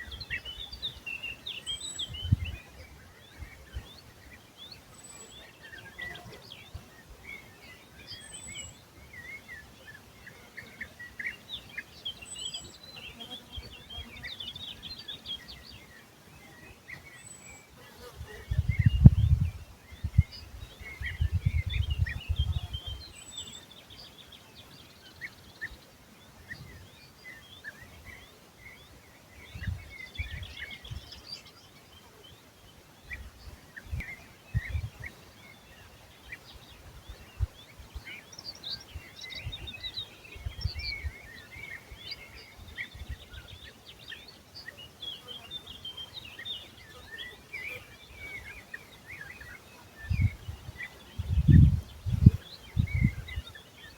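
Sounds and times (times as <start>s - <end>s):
songbirds chirping: 0.0s - 53.9s
microphone rumbles: 18.4s - 20.4s, 21.0s - 22.8s, 51.2s - 53.4s.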